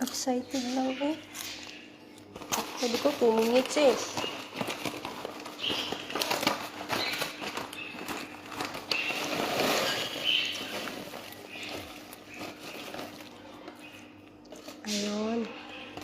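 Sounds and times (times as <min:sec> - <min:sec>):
popcorn kernels popping: 0:02.2 - 0:16.0
paper bag rustling: 0:02.3 - 0:15.1.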